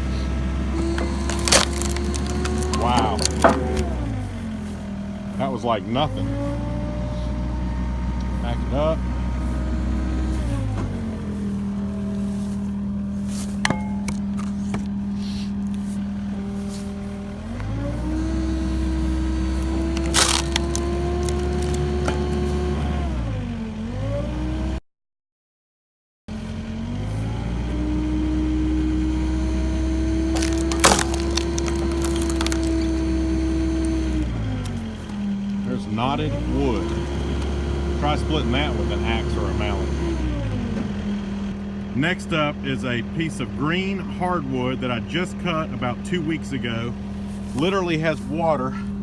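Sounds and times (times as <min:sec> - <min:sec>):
skid steer engine under load: 0:00.0 - 0:24.7, 0:26.3 - 0:49.0
wood cracking as it splits: 0:00.7 - 0:04.6, 0:17.6 - 0:22.6, 0:30.1 - 0:35.2.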